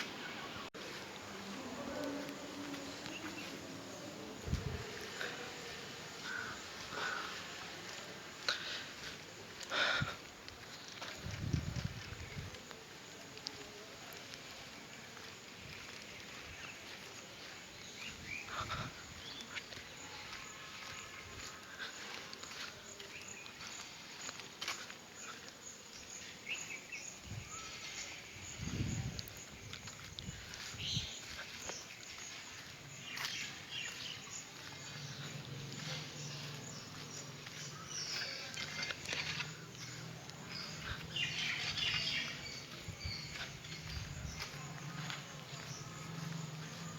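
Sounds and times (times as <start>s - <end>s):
steady background hiss: 0.0s - 11.1s.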